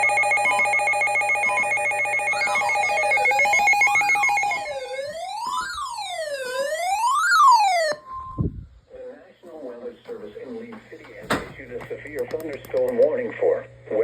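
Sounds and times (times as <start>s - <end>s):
sweeping siren tone: 0.0s - 8.5s.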